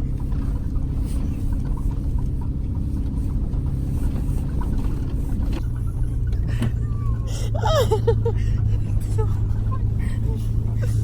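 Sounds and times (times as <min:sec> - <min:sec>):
van engine and road rumble: 0:00.0 - 0:11.0.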